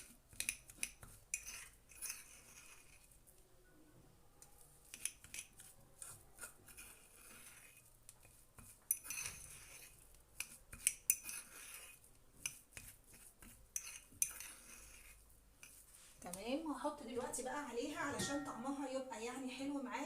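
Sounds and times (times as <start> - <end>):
spoon scraping and clinking bowl: 0.0 - 3.2, 4.8 - 15.8, 18.0 - 18.9
spoon stirring thick paste: 0.0 - 3.5, 4.4 - 19.8.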